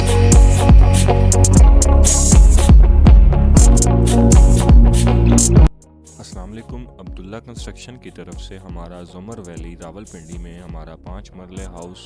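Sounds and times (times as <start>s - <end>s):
deep falling bass hits: 0.0s - 5.7s
electronic music with heavy beat: 0.0s - 12.0s.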